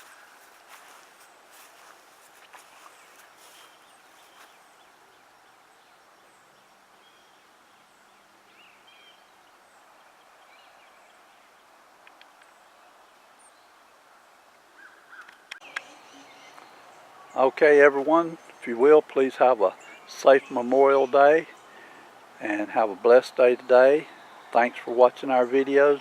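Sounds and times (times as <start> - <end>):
distant bird chirps: 0.0 - 26.0
faint steady hiss: 0.0 - 26.0
small clicks: 12.0 - 12.5.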